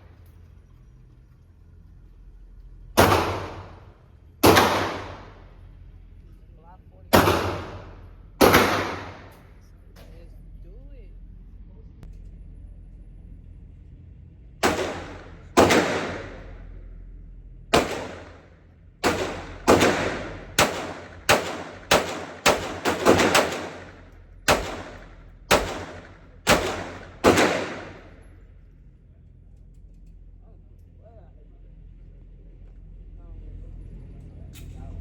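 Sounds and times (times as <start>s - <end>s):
pistol shots with echo: 3.0s - 5.5s, 7.1s - 9.5s, 14.6s - 16.7s, 17.7s - 28.3s.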